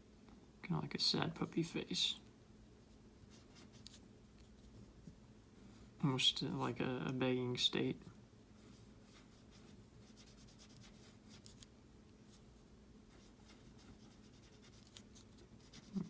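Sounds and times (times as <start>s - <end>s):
low room hum: 0.0s - 16.0s
drawing tool scratching paper: 9.1s - 11.6s, 13.1s - 16.0s.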